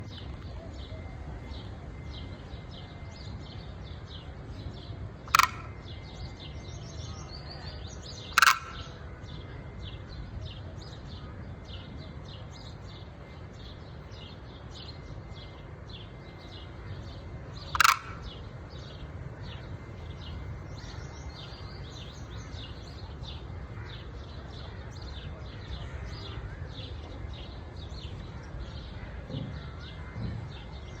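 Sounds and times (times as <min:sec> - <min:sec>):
crane calls: 0:00.0 - 0:30.6
low outdoor rumble: 0:00.0 - 0:31.0
rapid high chirping chorus: 0:05.3 - 0:09.0, 0:12.7 - 0:25.9.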